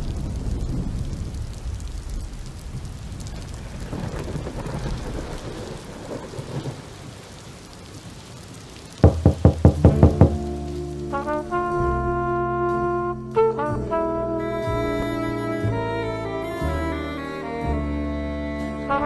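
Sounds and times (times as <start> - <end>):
low rumble of thunder: 0.0 - 7.7, 8.6 - 16.8
rain: 0.0 - 19.0
loud knocks: 9.0 - 10.5.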